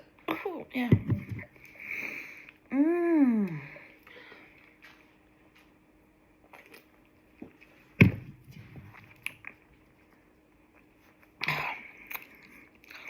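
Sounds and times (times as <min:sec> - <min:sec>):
mouth eating sounds: 0:06.4 - 0:07.8, 0:10.8 - 0:13.0
sudden thump: 0:08.0 - 0:09.0.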